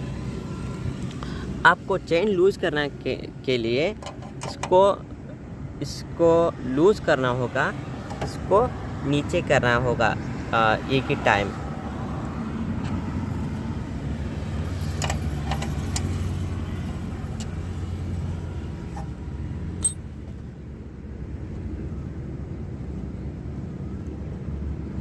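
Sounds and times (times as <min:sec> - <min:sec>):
low traffic rumble: 0:00.0 - 0:25.0
spanner clinking on metal: 0:19.8 - 0:20.0.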